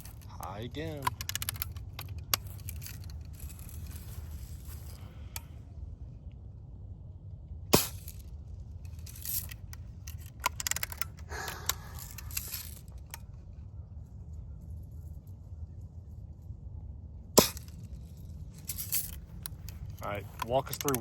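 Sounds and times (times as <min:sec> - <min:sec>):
gun clicks and rattles: 0:00.0 - 0:05.6, 0:07.8 - 0:14.6, 0:17.3 - 0:21.0.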